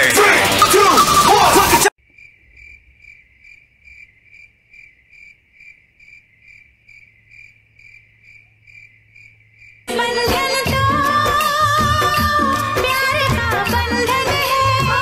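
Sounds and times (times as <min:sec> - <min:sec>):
loud music with singing: 0:00.0 - 0:01.9, 0:09.9 - 0:15.0
cricket chirping: 0:02.0 - 0:09.9.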